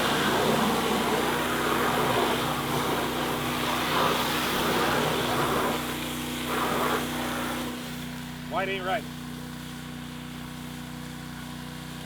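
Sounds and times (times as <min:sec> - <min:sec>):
water jet hissing: 0:00.0 - 0:08.8
pressure washer engine running: 0:00.0 - 0:12.0.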